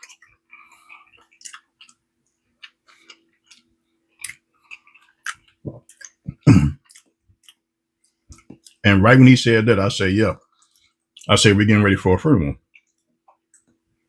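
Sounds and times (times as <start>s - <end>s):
person chewing food: 0.0s - 8.8s, 10.4s - 11.3s, 12.6s - 13.8s.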